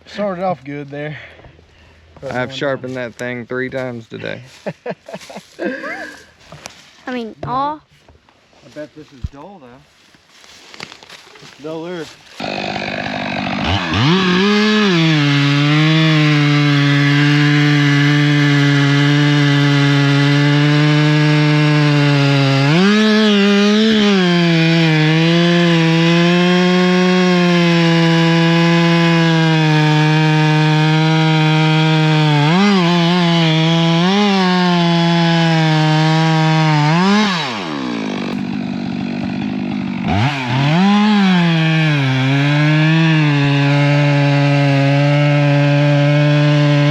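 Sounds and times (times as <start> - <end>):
chainsaw revving and cutting: 12.4 - 46.9.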